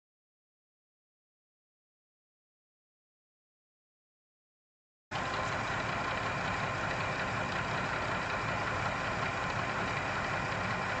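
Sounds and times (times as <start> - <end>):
tractor diesel engine rumble: 5.1 - 11.0.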